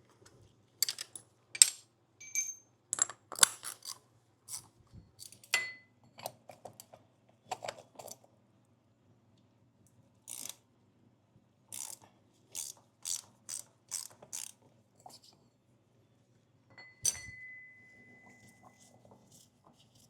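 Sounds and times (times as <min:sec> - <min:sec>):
ringing metallic clink: 0:02.2 - 0:02.7, 0:16.8 - 0:18.6
ratchet wrench clicking: 0:10.3 - 0:10.6, 0:11.7 - 0:12.0, 0:12.6 - 0:14.6.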